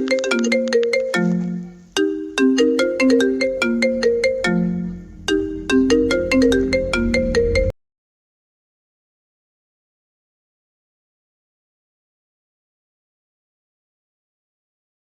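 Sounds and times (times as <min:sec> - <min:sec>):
marimba-like phone ringtone: 0:00.0 - 0:07.7.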